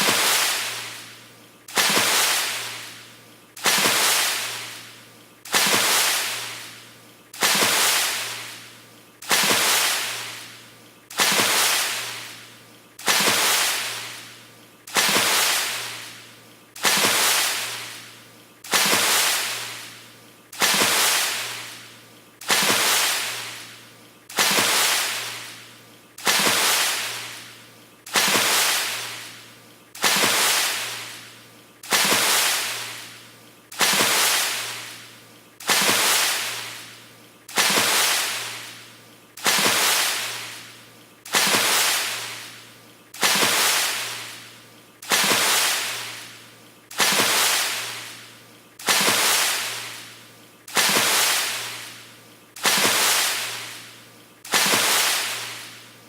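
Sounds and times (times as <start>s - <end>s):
water splash: 0.0s - 3.0s, 3.6s - 4.9s, 5.5s - 6.8s, 7.4s - 21.8s, 22.4s - 29.4s, 30.0s - 38.8s, 39.4s - 42.6s, 43.2s - 52.0s, 52.6s - 53.9s, 54.5s - 55.9s.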